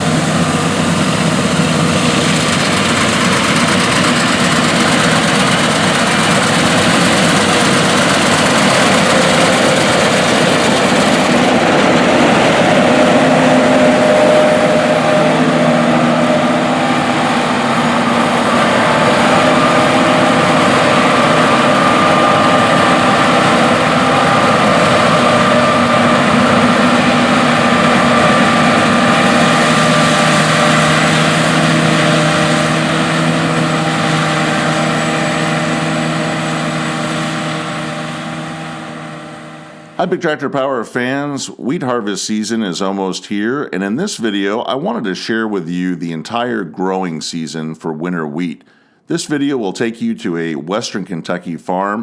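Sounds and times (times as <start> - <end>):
diesel farm machine engine running: 0.0 - 40.4.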